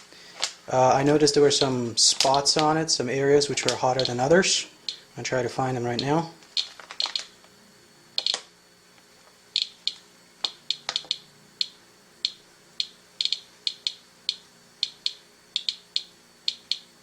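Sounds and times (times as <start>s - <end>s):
geiger counter clicking: 3.6s - 5.0s, 5.9s - 7.3s, 8.2s - 8.5s, 9.5s - 17.0s.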